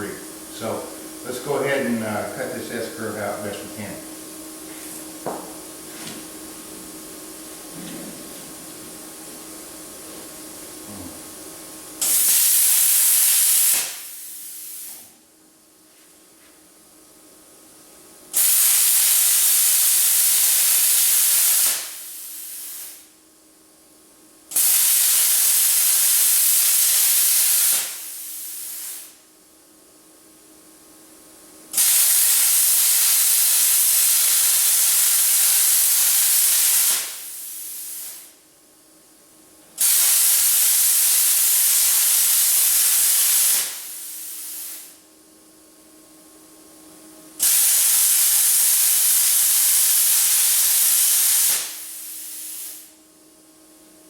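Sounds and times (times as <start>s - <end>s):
plasma cutter hissing: 12.0s - 15.0s, 18.4s - 23.1s, 24.6s - 29.2s, 31.8s - 38.4s, 39.8s - 45.0s, 47.4s - 52.9s.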